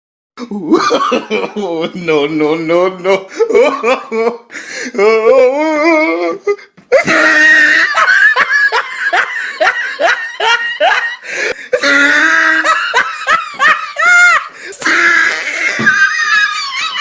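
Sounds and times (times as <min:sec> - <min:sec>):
hearty laughter: 0:00.6 - 0:01.9, 0:06.9 - 0:17.0.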